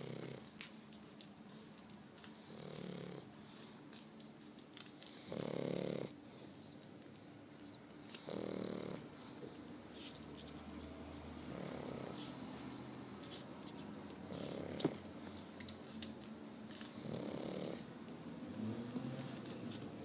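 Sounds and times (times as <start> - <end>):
dog snoring: 0.0 - 0.5, 2.3 - 3.6, 4.9 - 7.0, 8.0 - 12.9, 13.8 - 15.1, 16.7 - 17.9, 18.5 - 20.0.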